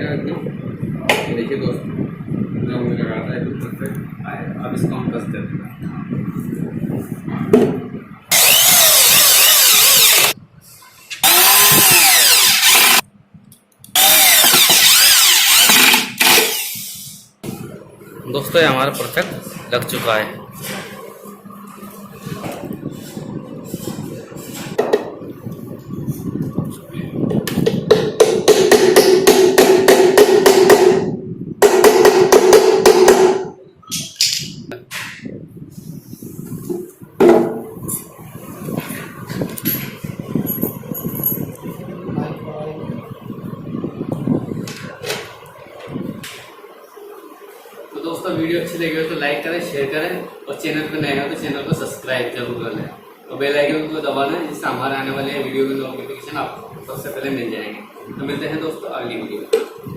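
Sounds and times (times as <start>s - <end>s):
power drill driving screws: 8.3s - 10.4s, 11.2s - 13.0s, 14.0s - 17.1s.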